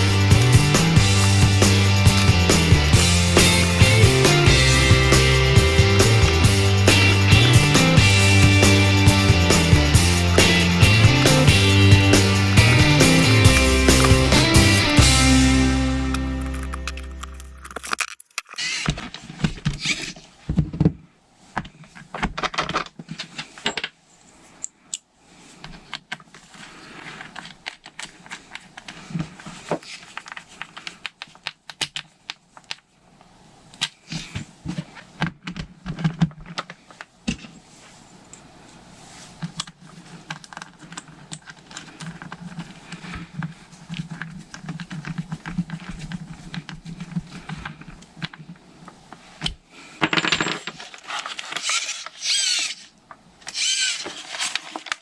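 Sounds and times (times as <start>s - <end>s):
background music: 0.0s - 17.7s
clatter of small parts and tools: 1.9s - 3.0s, 16.1s - 19.2s, 50.0s - 52.9s, 53.5s - 55.0s.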